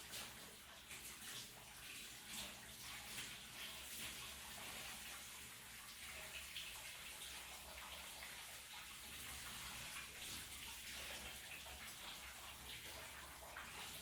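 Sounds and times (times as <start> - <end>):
shower water spraying: 0.0 - 14.0.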